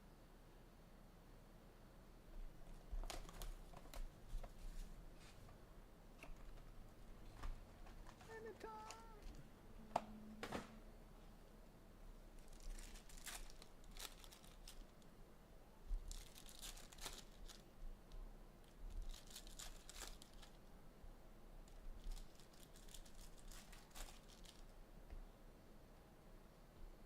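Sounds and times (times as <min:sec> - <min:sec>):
wrappers rustling and crinkling: 0:02.6 - 0:05.5, 0:12.3 - 0:15.1, 0:15.9 - 0:20.7, 0:21.6 - 0:24.8
card packs being torn open: 0:03.0 - 0:04.0, 0:12.4 - 0:15.0, 0:16.1 - 0:17.6, 0:19.0 - 0:20.6, 0:21.7 - 0:24.7.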